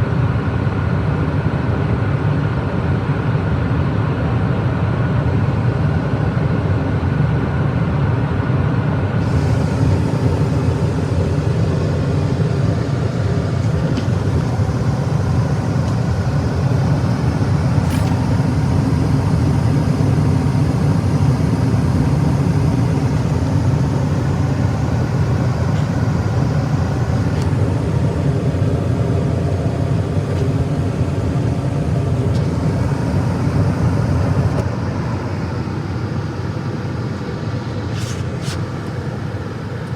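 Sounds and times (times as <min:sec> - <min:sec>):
gas furnace rumbling: 0:09.0 - 0:39.9
faint steady hum: 0:09.2 - 0:37.9.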